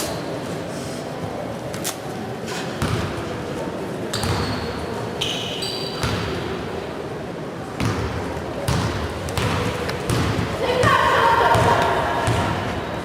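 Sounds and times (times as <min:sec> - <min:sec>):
shoe squeaks: 0:04.1 - 0:06.3
basketballs bouncing on floor: 0:07.8 - 0:12.8.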